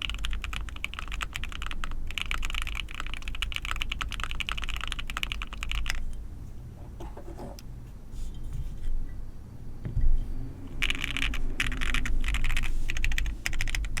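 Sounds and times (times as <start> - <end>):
mechanical keyboard typing: 0.0 - 6.0, 10.8 - 14.0.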